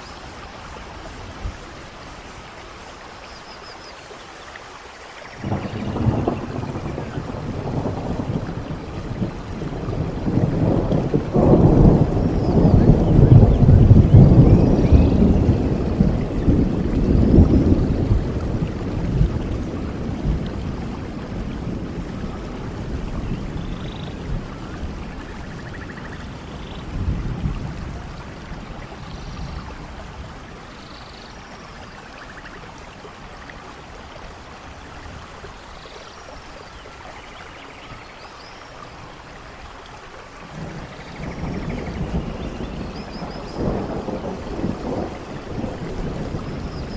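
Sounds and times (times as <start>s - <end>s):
heavy rain: 0.0s - 46.9s
thunder rumbling: 5.4s - 35.6s, 40.4s - 46.9s.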